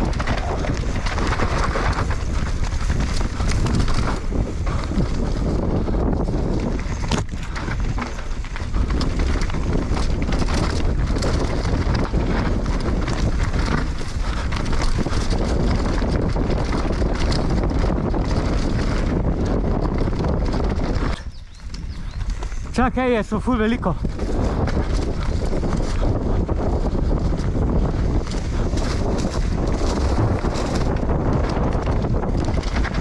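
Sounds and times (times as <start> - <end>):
clattering knocks of bike: 0.0 - 5.8, 6.5 - 22.8
bike tyre noise: 0.0 - 33.0
wind rushing over microphone: 0.0 - 33.0.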